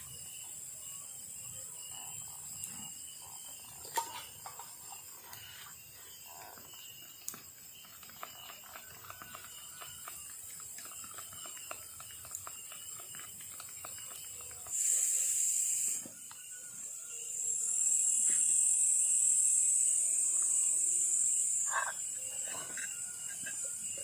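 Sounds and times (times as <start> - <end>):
night insects buzzing chorus: 0.0 - 24.0
loud insect buzz: 14.6 - 24.0.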